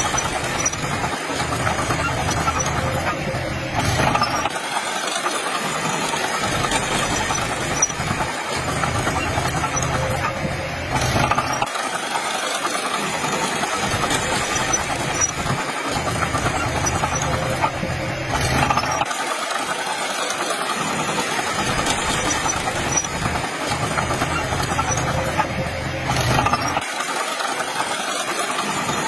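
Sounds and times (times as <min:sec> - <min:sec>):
diesel truck engine rumbling: 0:00.0 - 0:11.7, 0:13.0 - 0:29.0.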